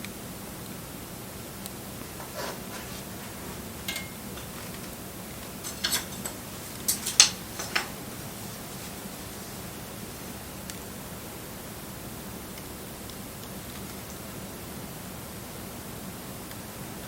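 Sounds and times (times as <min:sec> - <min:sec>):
wood fire crackling: 0:01.2 - 0:14.2.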